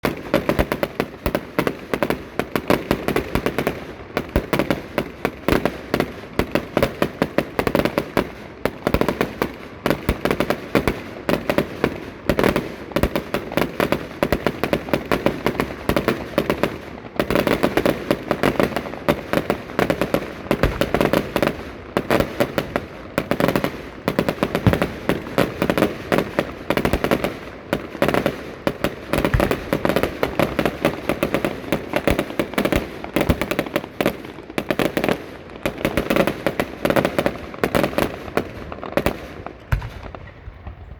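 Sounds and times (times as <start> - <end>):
fireworks banging: 0.0 - 40.9.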